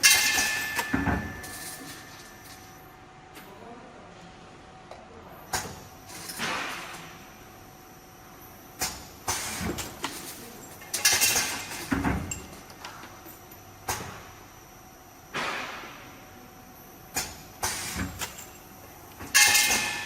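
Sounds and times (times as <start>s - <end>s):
packaging machine clacks: 8.8s - 13.3s.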